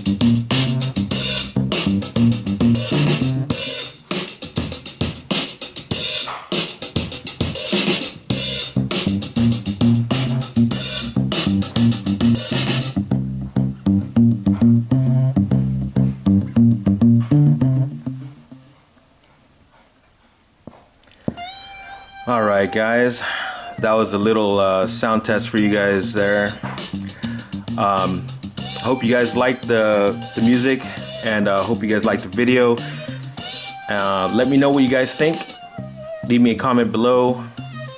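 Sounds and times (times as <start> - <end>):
repeating bass line: 0.0 - 3.6, 8.3 - 18.7, 23.8 - 36.6
drum beat: 0.0 - 18.2, 25.4 - 35.7.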